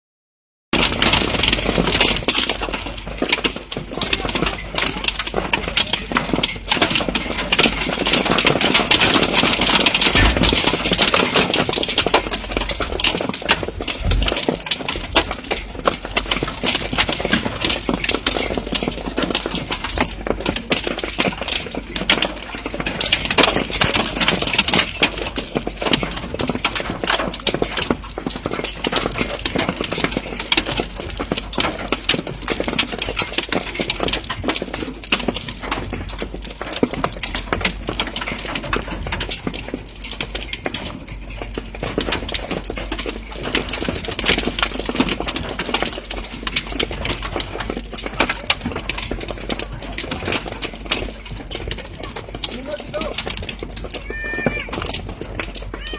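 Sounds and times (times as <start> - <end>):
hailstones pelting hard surfaces: 0.8 - 55.9
rushing storm noise: 9.9 - 11.5.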